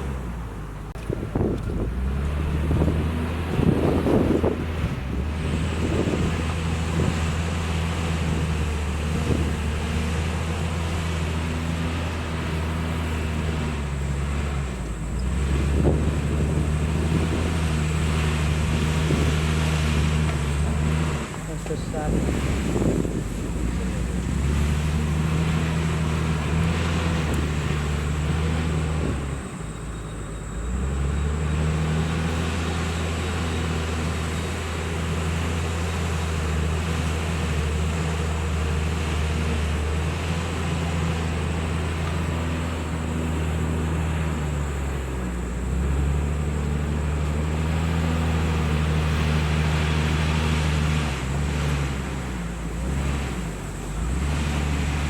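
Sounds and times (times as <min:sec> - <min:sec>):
heavy diesel engine running: 0:00.0 - 0:55.0
faint high whine: 0:29.1 - 0:34.9.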